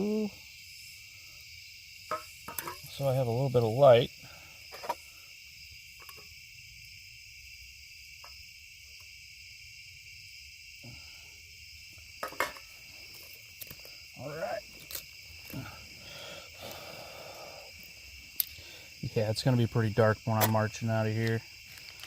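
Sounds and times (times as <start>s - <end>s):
night insects trilling: 0.0s - 22.0s.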